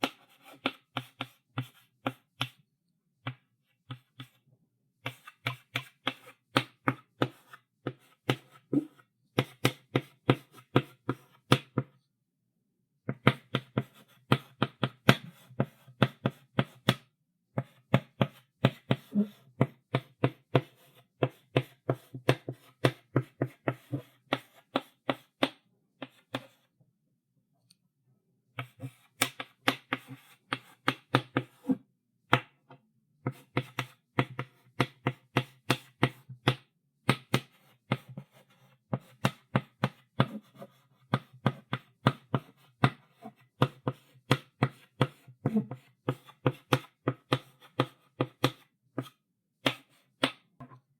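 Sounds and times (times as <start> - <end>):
chalk knocking on blackboard: 17.6 - 26.6.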